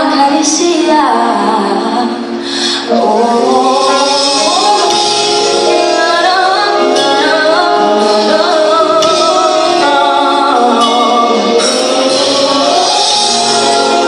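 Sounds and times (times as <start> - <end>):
woman singing: 0.0 - 14.0
worship band playing: 1.7 - 14.0.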